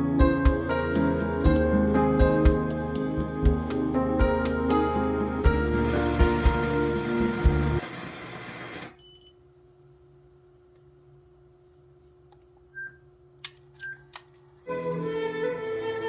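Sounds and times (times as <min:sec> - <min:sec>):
music: 0:00.0 - 0:07.8, 0:14.7 - 0:16.0.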